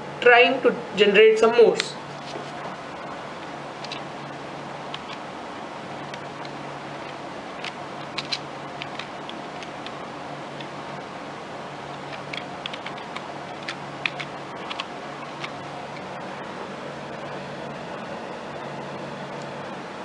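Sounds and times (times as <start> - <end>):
steady low hum: 0.0 - 20.0
keyboard keys clicking: 12.1 - 16.1.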